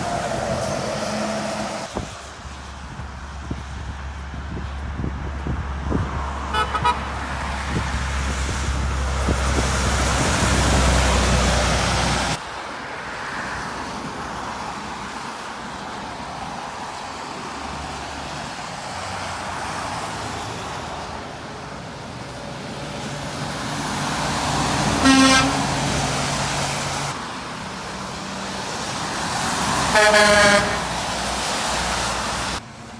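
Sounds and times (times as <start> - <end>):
truck engine rumbling: 0.0 - 12.4, 19.6 - 32.9
traffic noise: 0.0 - 32.9
horn toot: 6.5 - 7.3, 24.8 - 26.0, 29.9 - 31.1.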